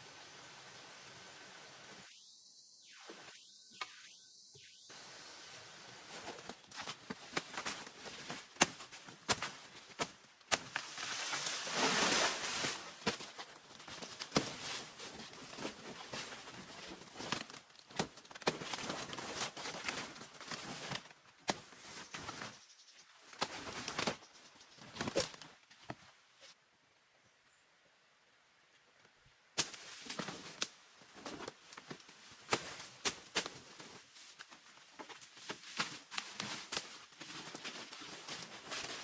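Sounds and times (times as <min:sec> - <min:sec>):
rustling and crackling: 0:06.0 - 0:26.6, 0:29.6 - 0:39.0.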